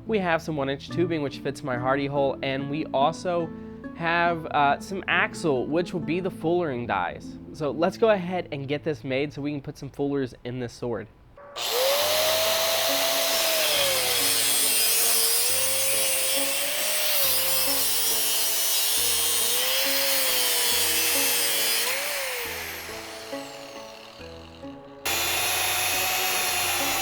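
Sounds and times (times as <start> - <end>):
angle grinder grinding steel: 11.4 - 27.0.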